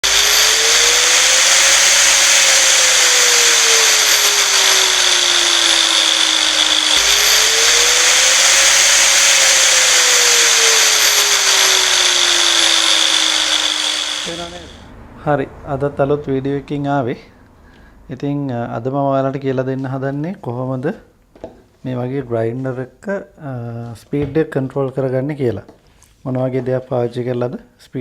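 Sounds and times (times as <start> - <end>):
electric grinder motor whining: 0.0 - 14.9.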